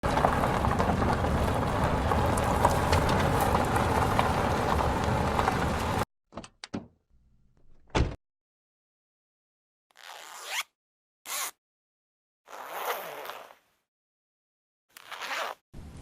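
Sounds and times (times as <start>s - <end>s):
steady rushing noise with ticks: 0.0s - 6.0s.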